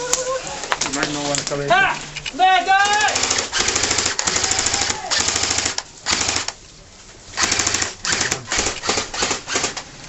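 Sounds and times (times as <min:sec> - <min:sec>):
airsoft rifles firing full-auto: 0:02.8 - 0:06.6, 0:07.4 - 0:09.8.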